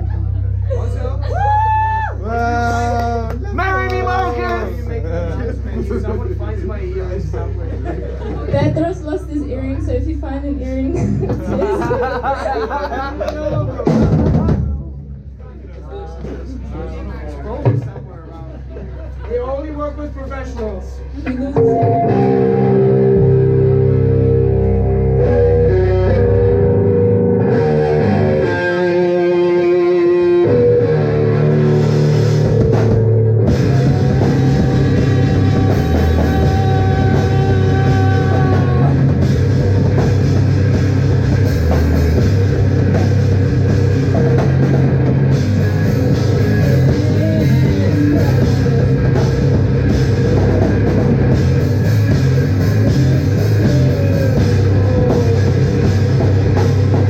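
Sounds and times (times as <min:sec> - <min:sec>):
live rock band playing: 0:08.0 - 0:14.8, 0:20.0 - 0:57.0
distorted electric guitar: 0:21.3 - 0:57.0.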